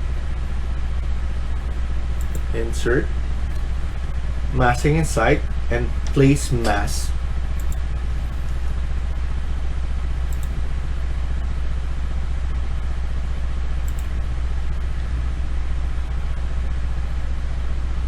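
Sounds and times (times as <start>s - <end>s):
faint clicks: 1.6s - 2.6s, 7.6s - 8.8s, 10.3s - 10.6s, 13.8s - 15.0s.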